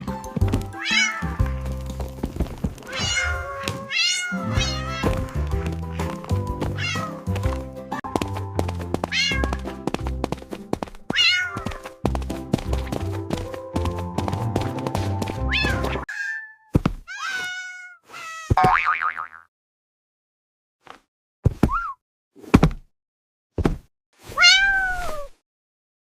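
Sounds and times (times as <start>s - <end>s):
cat meowing: 0.8s - 1.6s, 2.9s - 7.4s, 9.1s - 9.6s, 11.1s - 11.8s, 15.5s - 18.6s, 24.4s - 25.3s.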